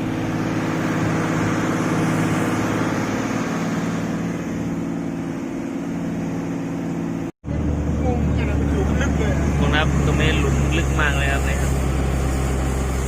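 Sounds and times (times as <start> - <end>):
diesel truck engine droning: 0.0 - 13.0
wind and road noise hiss: 8.6 - 13.0.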